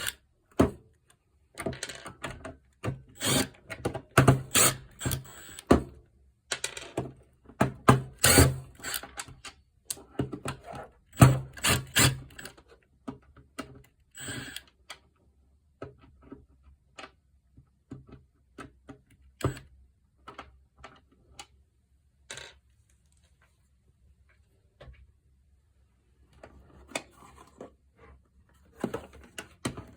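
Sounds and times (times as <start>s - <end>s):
plastic parts clicking and clattering: 1.5s - 5.8s.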